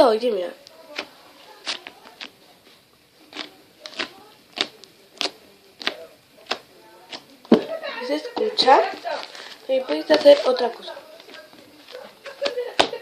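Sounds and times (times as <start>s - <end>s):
slime squeezed popping: 3.3s - 7.3s.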